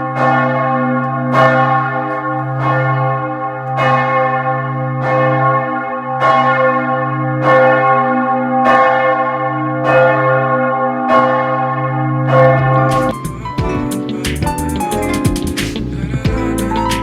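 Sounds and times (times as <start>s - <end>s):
large church bell tolling: 0.0s - 15.4s
deep steady hum: 12.7s - 17.0s.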